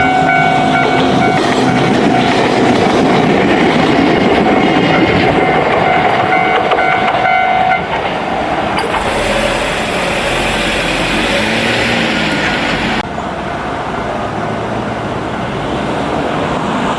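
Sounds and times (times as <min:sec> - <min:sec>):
train wheels clattering on rails: 0:00.0 - 0:13.0.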